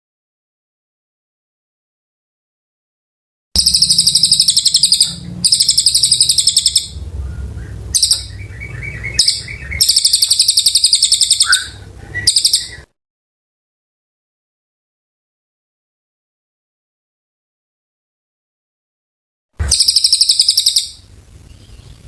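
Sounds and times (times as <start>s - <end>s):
low hum: 3.6s - 12.8s, 19.6s - 22.0s
songbird trilling: 3.6s - 12.9s, 19.6s - 22.0s.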